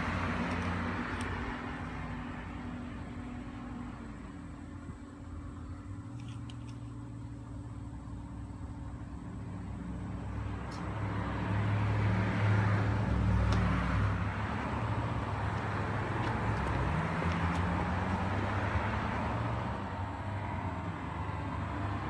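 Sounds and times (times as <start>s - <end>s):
car engine hum: 0.0s - 22.0s
tyre noise: 13.4s - 18.6s.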